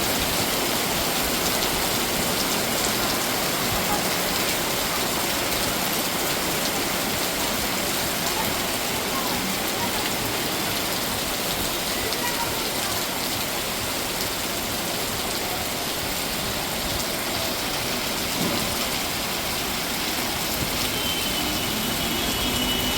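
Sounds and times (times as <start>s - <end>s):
torrential rain pouring: 0.0s - 22.9s.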